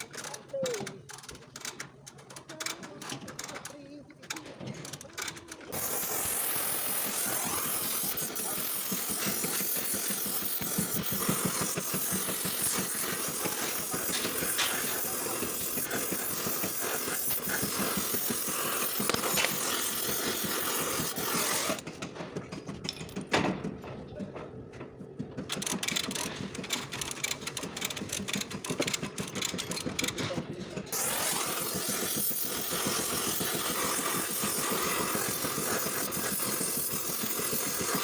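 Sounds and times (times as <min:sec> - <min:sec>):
power tool hissing: 0:05.7 - 0:21.8, 0:30.9 - 0:38.0.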